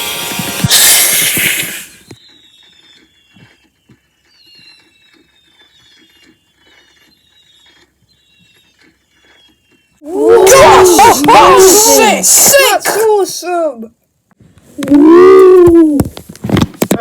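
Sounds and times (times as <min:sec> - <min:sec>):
firework crackling: 0:00.2 - 0:02.1
firework rushing hiss: 0:00.6 - 0:02.0.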